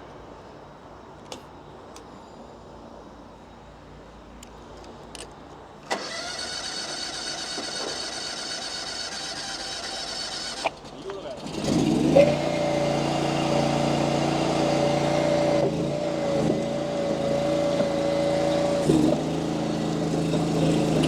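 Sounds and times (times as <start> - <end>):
starter motor cranking: 5.9 - 12.6.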